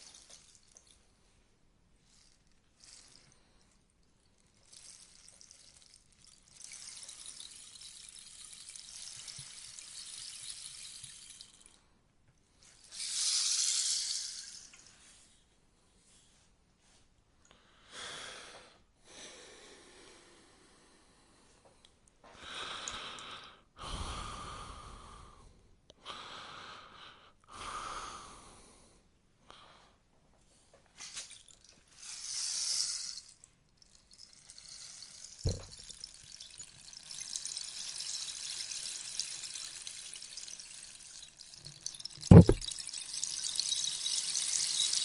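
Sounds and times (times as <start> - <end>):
rainstick filling trickling: 0.0 - 1.0, 2.2 - 11.8, 12.7 - 14.8, 31.0 - 45.0
sharp knock: 42.3 - 42.6.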